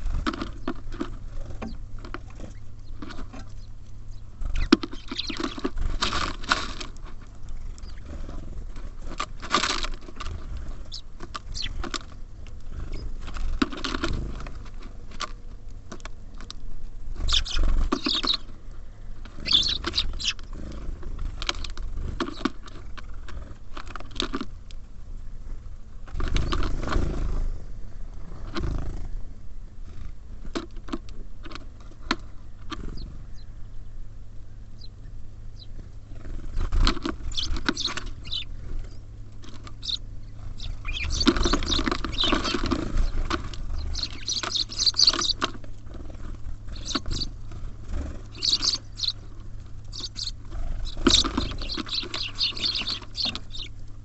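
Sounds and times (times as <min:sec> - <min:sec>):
birds pecking on feeder: 0:00.0 - 0:27.6, 0:28.4 - 0:29.2, 0:29.8 - 0:33.8, 0:34.7 - 0:54.0
high bird chirps: 0:02.5 - 0:05.8, 0:10.9 - 0:11.8, 0:17.2 - 0:18.5, 0:19.4 - 0:20.4, 0:37.2 - 0:39.1, 0:39.7 - 0:45.4, 0:46.7 - 0:47.4, 0:48.3 - 0:49.3, 0:49.9 - 0:53.8.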